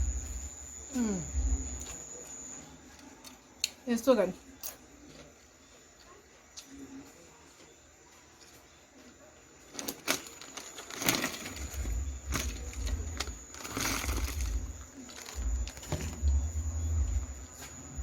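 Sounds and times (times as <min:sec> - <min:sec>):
crunchy chewing: 0:04.5 - 0:17.8.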